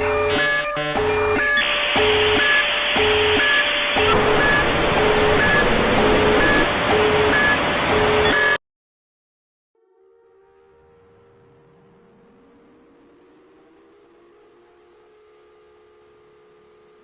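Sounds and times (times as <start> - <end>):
alternating electronic alarm beeps: 0.0 - 8.6
harsh static hiss: 0.0 - 8.6
steady electronic tone: 0.0 - 8.6.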